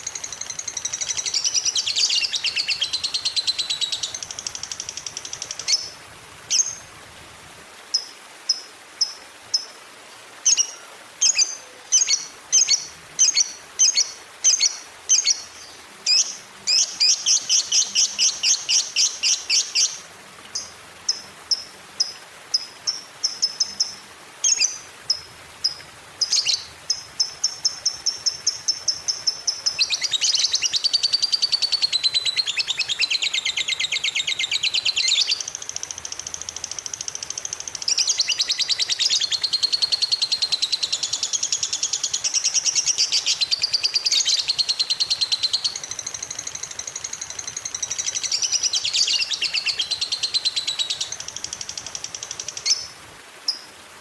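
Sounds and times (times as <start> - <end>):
bird trilling chirps: 0.1 - 5.9, 25.6 - 52.9.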